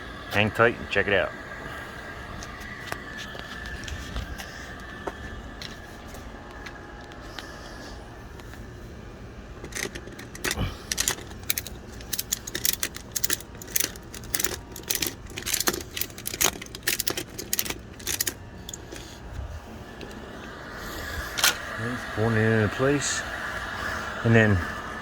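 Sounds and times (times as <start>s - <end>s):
ratchet strap clicking: 9.6s - 19.1s.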